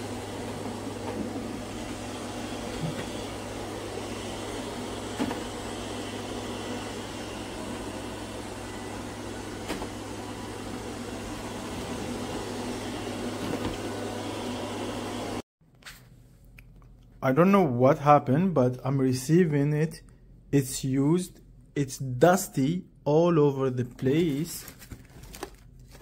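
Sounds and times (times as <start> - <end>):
robot vacuum whirring: 0.0 - 15.4.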